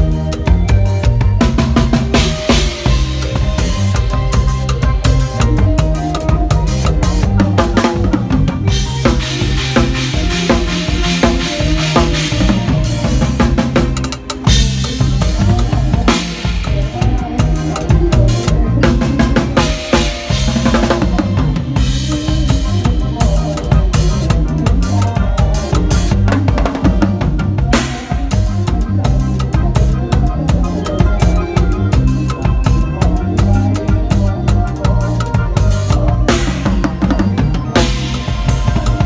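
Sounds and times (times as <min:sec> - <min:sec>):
bass line: 0:00.0 - 0:39.0
drum kit beat: 0:00.0 - 0:39.0
melodic instruments: 0:00.0 - 0:39.0.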